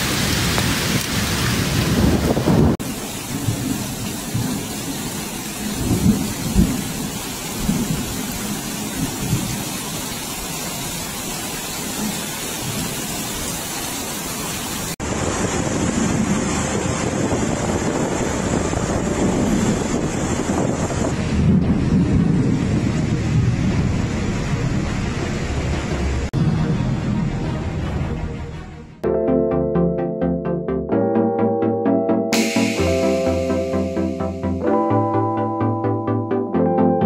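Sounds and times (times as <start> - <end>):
wind gusts rumbling: 0.0 - 13.6, 15.0 - 28.6
heavy rain pouring: 0.0 - 28.6, 32.4 - 35.8.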